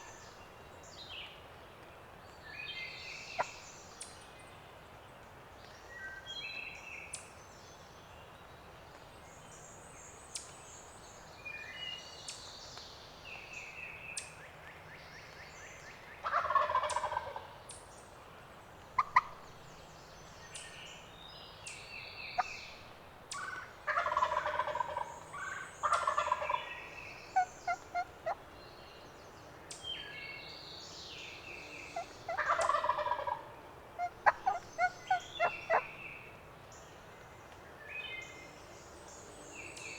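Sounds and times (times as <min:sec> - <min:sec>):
songbirds singing and chirping: 0:00.0 - 0:39.9
turkey gobbling: 0:16.2 - 0:17.5, 0:23.4 - 0:26.6, 0:27.4 - 0:28.4, 0:32.0 - 0:35.9.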